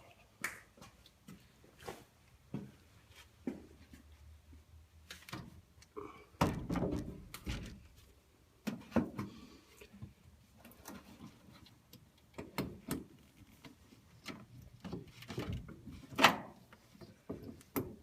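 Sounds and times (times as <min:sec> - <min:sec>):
knocks and thunks: 0:06.4 - 0:07.8.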